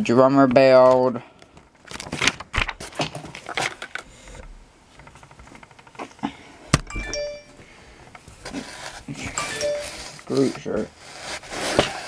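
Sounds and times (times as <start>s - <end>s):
box contents rustling and clicking: 1.8s - 4.1s.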